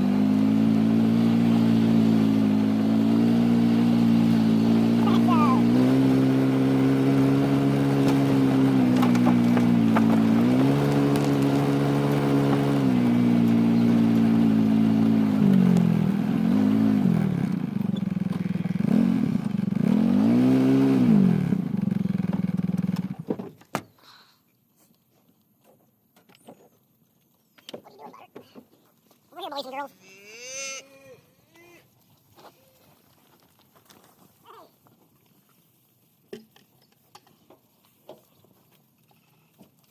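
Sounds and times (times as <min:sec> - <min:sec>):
vehicle engine running: 0:00.0 - 0:23.2.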